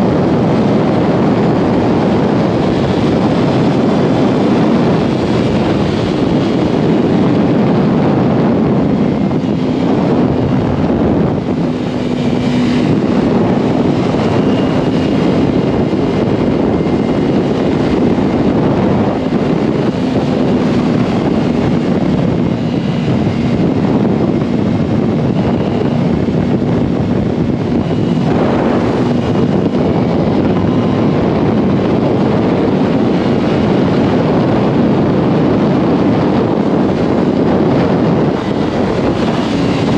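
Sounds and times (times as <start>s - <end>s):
motorcycle engine running: 0.0s - 39.9s
wind rushing on microphone: 0.0s - 39.9s.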